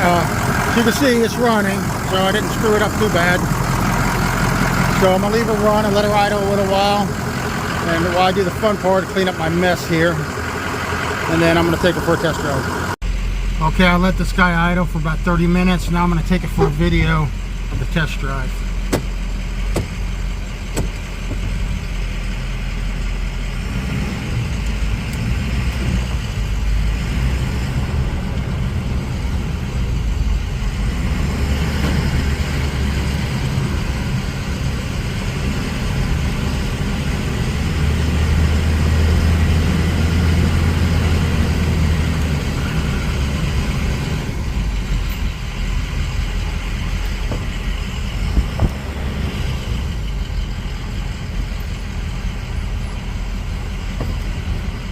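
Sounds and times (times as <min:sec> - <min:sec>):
diesel van engine running: 0:00.0 - 0:54.9.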